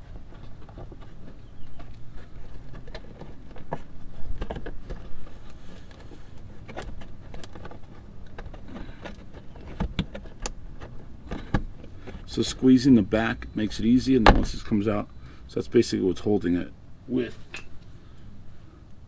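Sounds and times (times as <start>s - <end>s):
plastic clicks and knocks: 0.3s - 12.3s.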